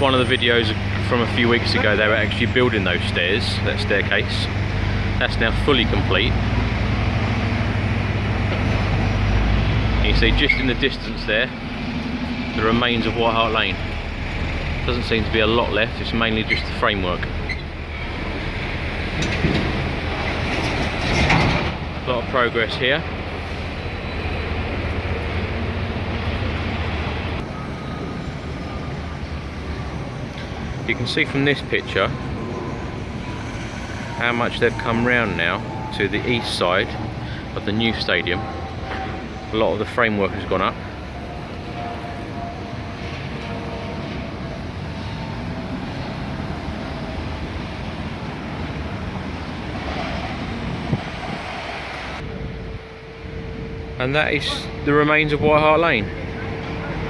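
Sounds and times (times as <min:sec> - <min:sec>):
low outdoor rumble: 0:00.0 - 0:32.6
faint steady tones: 0:52.1 - 0:57.0.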